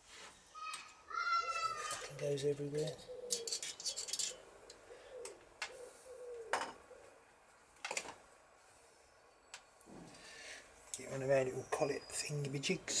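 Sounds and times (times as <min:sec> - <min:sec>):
hand tools clicking on metal: 0:02.9 - 0:04.8.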